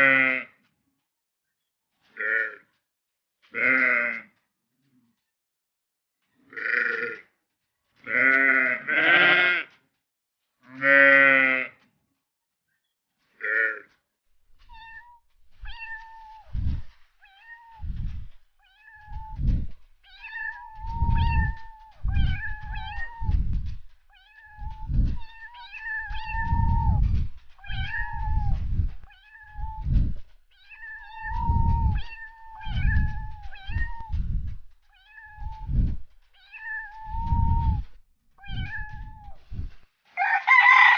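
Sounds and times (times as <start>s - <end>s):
cat meowing: 14.6s - 39.5s
low thuds: 14.6s - 39.8s.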